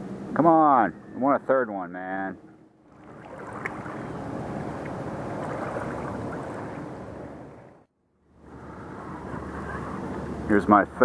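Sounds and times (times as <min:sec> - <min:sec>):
wind: 0:00.0 - 0:11.0
river water rushing: 0:02.9 - 0:07.9.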